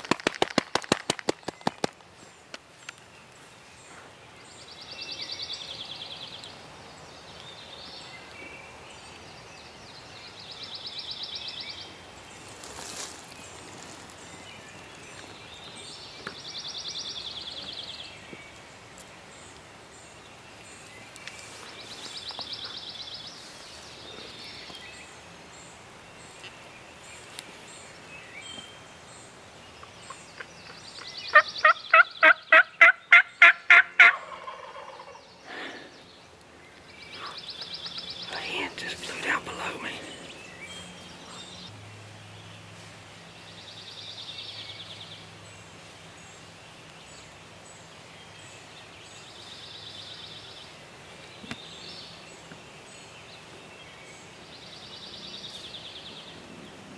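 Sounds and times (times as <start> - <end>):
turkey gobbling notes: 31.3 - 35.3.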